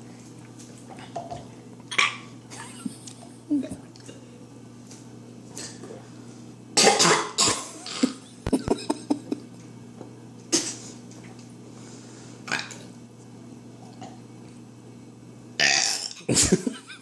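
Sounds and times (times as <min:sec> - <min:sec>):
boy coughing: 0:06.8 - 0:08.2.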